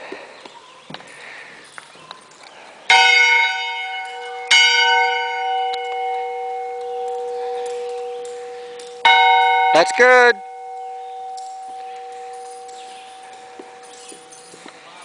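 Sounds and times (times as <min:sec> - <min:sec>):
church bell tolling: 0:02.9 - 0:14.7.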